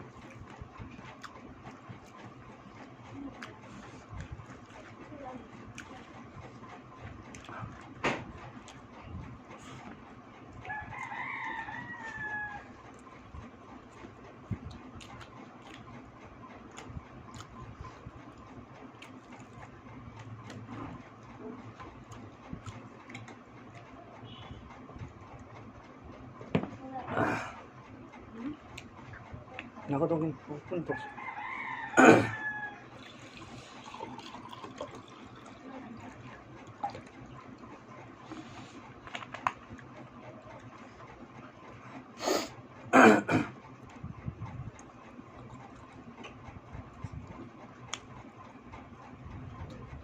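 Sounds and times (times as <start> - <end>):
rooster crowing: 10.6 - 12.8, 30.9 - 33.0.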